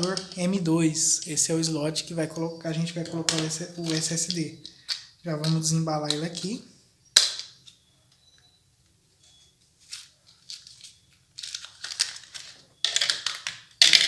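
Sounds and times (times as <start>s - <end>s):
packaging crinkling and tearing: 9.8s - 14.0s.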